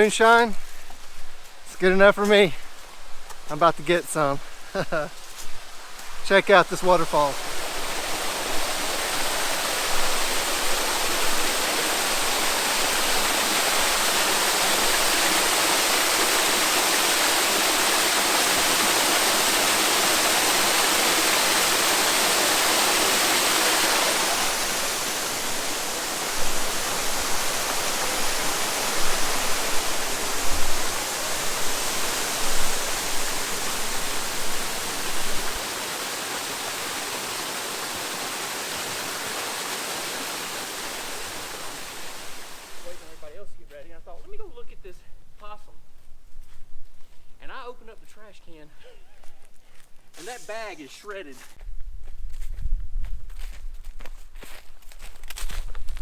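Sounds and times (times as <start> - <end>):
waterfall rushing: 6.2 - 43.3.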